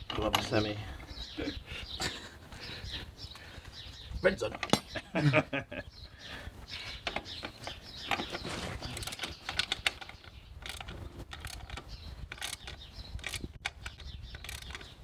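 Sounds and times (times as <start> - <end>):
metal tools clinking: 0.1 - 0.8, 4.4 - 5.3, 7.0 - 14.8
ratchet wrench clicking: 9.0 - 14.9.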